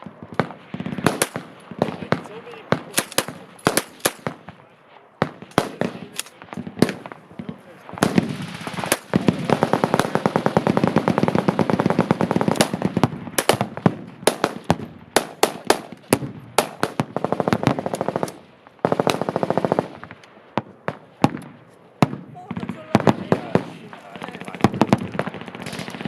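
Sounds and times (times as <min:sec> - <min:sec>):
single gunshots: 0:00.0 - 0:10.4, 0:12.5 - 0:18.4
machine guns firing bursts: 0:00.1 - 0:04.6, 0:05.2 - 0:20.2, 0:22.0 - 0:26.0.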